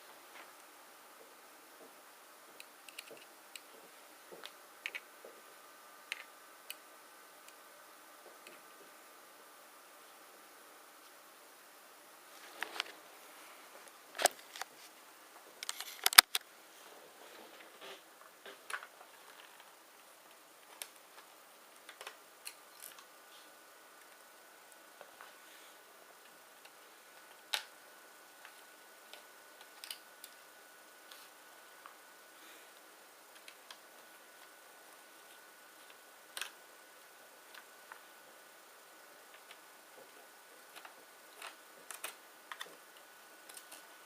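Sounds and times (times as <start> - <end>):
laptop parts clicking and tapping: 15.6 - 16.4.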